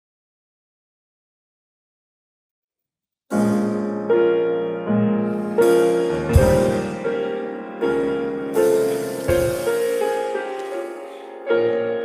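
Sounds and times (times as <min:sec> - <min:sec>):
piano playing slow chords: 0:03.3 - 0:12.0.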